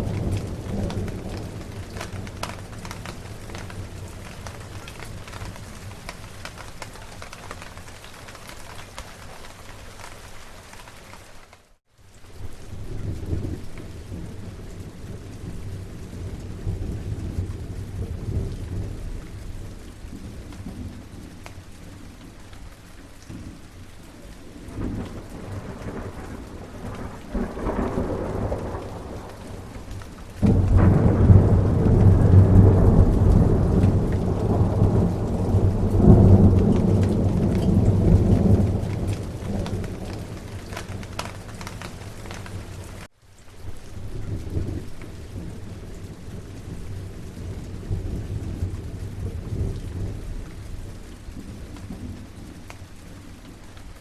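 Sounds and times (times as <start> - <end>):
thunder rumbling: 0.0 - 9.8, 12.5 - 22.3, 23.3 - 43.1, 44.0 - 52.7
steady rain: 0.0 - 54.0
loud peal of thunder: 24.7 - 41.1.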